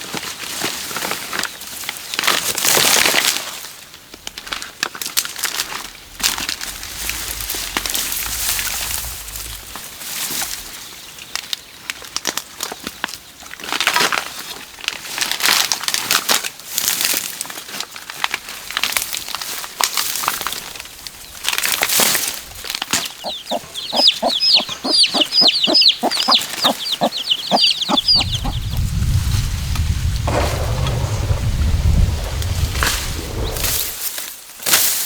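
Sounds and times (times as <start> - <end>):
rustling and flapping: 4.4 - 10.8, 27.9 - 34.2
low steady hum: 6.0 - 10.6
rapid short bird calls: 23.0 - 28.8.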